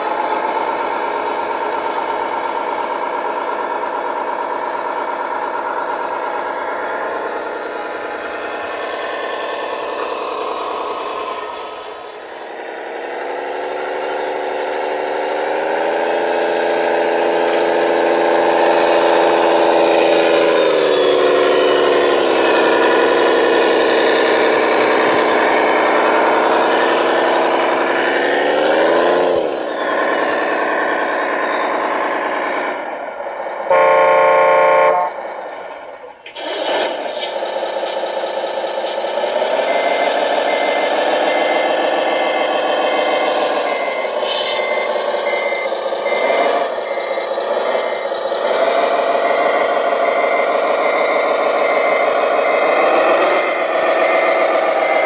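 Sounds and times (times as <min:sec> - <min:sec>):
radio-controlled truck motor drone: 0:00.0 - 0:55.0
horn blast: 0:33.7 - 0:35.4.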